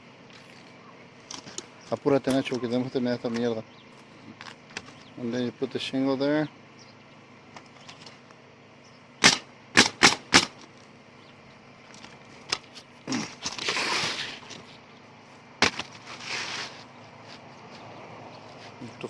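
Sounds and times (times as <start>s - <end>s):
nail gun shots: 9.2s - 10.6s
rasping sound: 13.1s - 14.7s, 15.6s - 17.5s.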